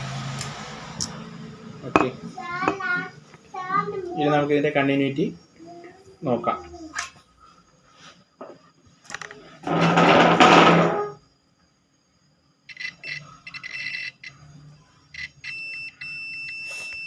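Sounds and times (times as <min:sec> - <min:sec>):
loud scraping noise: 0:09.5 - 0:11.2
continuity tester beeping: 0:12.6 - 0:17.0.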